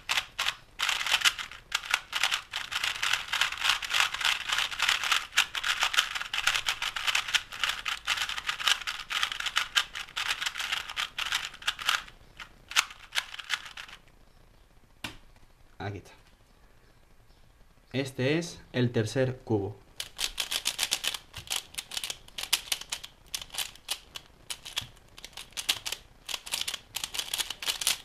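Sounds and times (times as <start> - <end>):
puzzle cube clicking turns: 0.0 - 14.0, 20.0 - 28.0.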